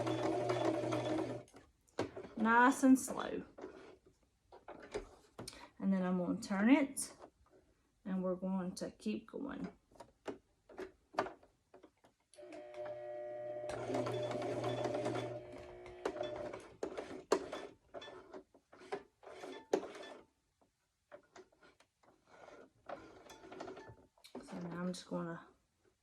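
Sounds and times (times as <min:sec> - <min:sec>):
sewing machine stitching: 0:00.0 - 0:02.5, 0:12.4 - 0:20.3, 0:21.3 - 0:24.9.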